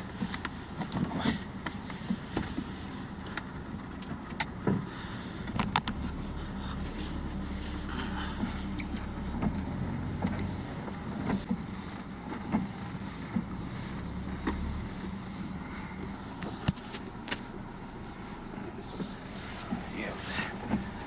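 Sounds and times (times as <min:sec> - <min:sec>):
truck engine running: 0:00.0 - 0:21.0.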